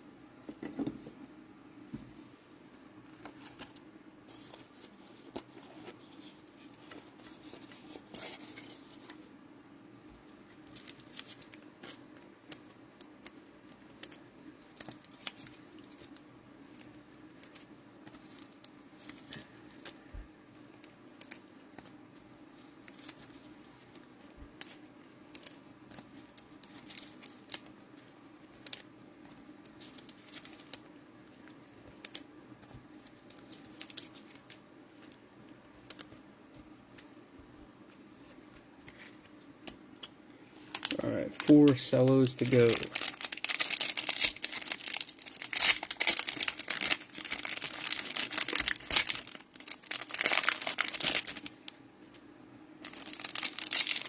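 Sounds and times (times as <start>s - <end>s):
steady low hum: 0.0s - 54.0s
plastic wrapper crackling: 40.6s - 51.8s, 52.8s - 54.0s.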